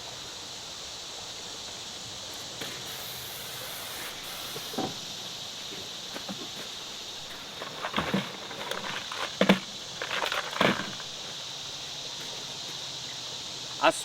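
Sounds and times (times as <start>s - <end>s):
steady outdoor hiss: 0.0s - 14.0s
aerosol can spraying: 2.3s - 6.1s.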